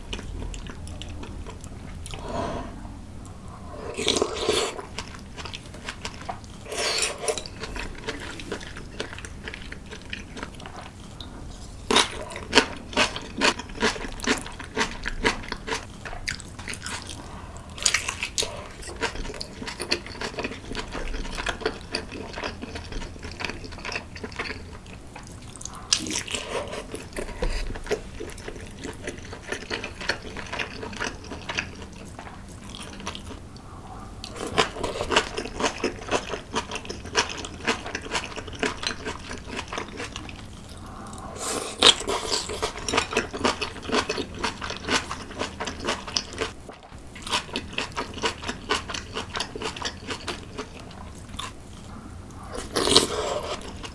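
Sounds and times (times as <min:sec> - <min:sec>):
wet mouth and soup sounds: 0:00.1 - 0:10.5, 0:25.2 - 0:46.5, 0:47.3 - 0:53.9
chewing and crunching: 0:03.8 - 0:53.9.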